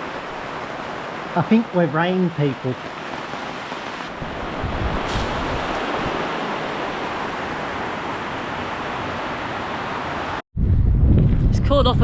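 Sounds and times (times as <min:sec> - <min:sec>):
heavy rain pouring: 0:00.0 - 0:10.4
low wind rumble on microphone: 0:03.3 - 0:12.0.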